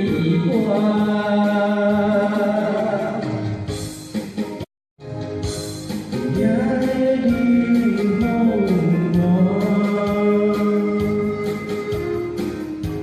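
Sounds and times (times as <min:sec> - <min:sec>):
person singing: 0:00.0 - 0:03.4, 0:06.1 - 0:12.4
instrumental backing music: 0:00.0 - 0:13.0.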